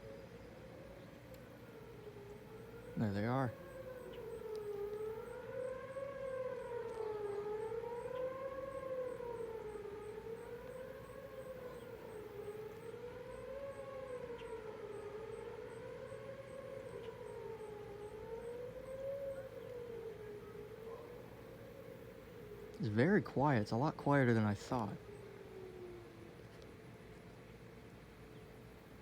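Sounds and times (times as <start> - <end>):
wavering siren tone: 0.0 - 26.6.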